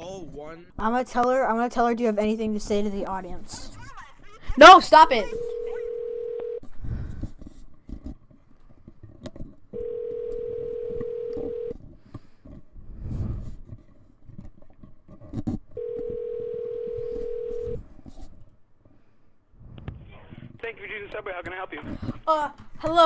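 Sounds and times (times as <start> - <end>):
phone ringback tone: 5.2 - 6.6, 9.8 - 11.8, 15.8 - 17.8.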